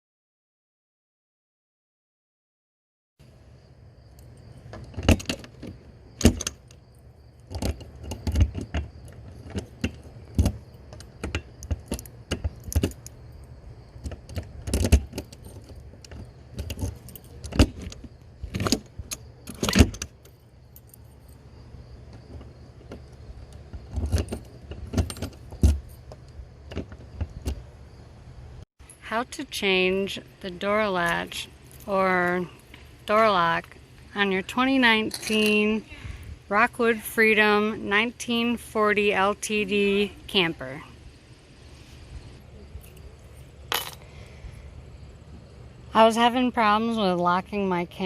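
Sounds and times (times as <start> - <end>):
metallic latch clicks and rattles: 4.1 - 21.4.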